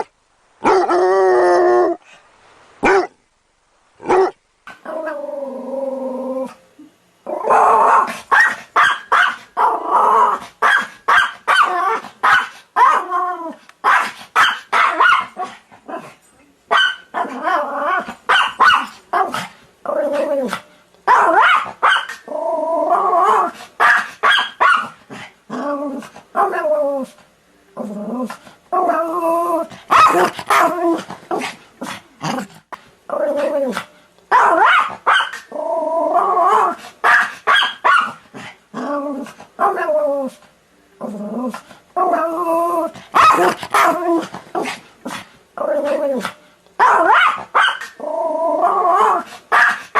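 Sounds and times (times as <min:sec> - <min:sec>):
dog barking: 0:02.8 - 0:03.2, 0:08.3 - 0:09.4, 0:10.6 - 0:13.0, 0:13.8 - 0:15.4, 0:16.7 - 0:17.1, 0:21.1 - 0:22.2, 0:23.8 - 0:25.0, 0:29.9 - 0:30.8, 0:34.3 - 0:35.4, 0:37.0 - 0:38.2, 0:43.2 - 0:44.0, 0:46.8 - 0:47.9, 0:49.5 - 0:49.9.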